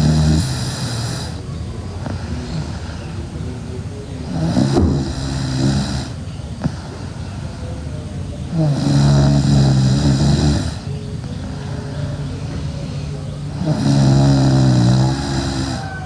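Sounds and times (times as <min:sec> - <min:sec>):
girl snoring loudly: 0:00.0 - 0:01.4, 0:04.3 - 0:06.2, 0:08.5 - 0:10.9, 0:13.6 - 0:15.9.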